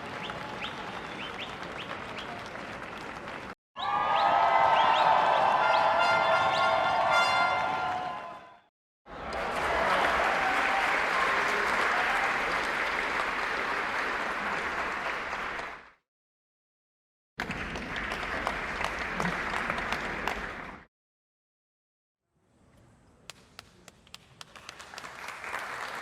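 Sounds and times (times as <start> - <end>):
crowd clapping: 0.0 - 8.4, 9.1 - 16.0, 17.4 - 20.9, 23.3 - 26.0
voices cheering: 0.0 - 15.7.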